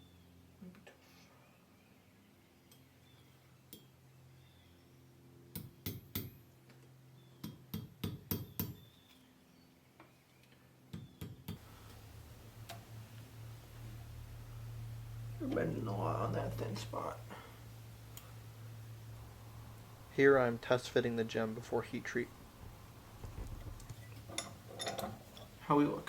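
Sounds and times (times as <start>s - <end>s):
faint low hum: 11.6s - 26.0s.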